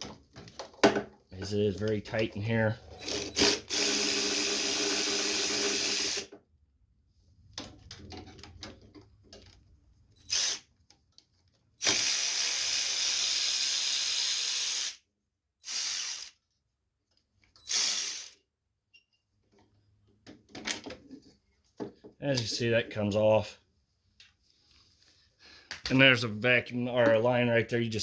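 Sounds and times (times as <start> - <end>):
power drill spinning: 2.9 - 6.3, 10.2 - 10.6, 11.8 - 15.0, 15.6 - 16.4, 17.6 - 18.4.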